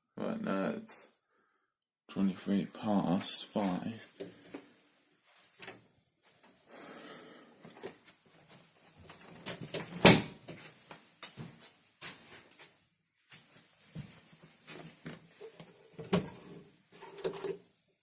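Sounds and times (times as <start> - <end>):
soft rustling: 10.6 - 15.6
clicks and knocks of handling: 17.0 - 17.6.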